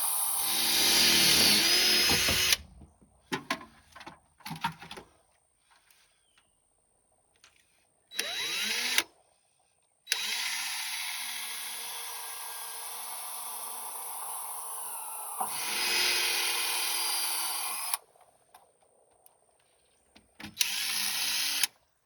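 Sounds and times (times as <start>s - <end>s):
power drill boring into metal: 0.0s - 2.8s, 8.1s - 9.0s, 10.1s - 18.0s, 20.5s - 21.7s.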